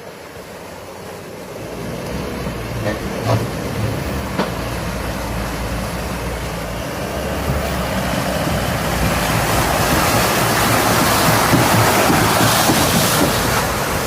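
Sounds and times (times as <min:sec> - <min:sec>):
truck engine rumbling: 0:00.0 - 0:14.0
water rushing: 0:00.0 - 0:14.0
knock: 0:11.2 - 0:13.4.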